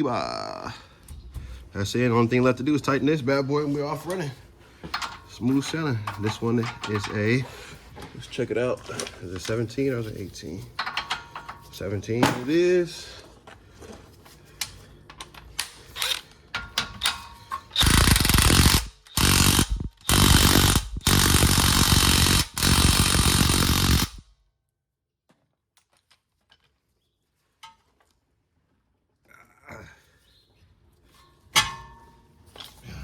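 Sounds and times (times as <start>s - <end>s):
impact wrench hammering: 4.9s - 5.3s, 10.8s - 11.6s, 16.0s - 24.2s.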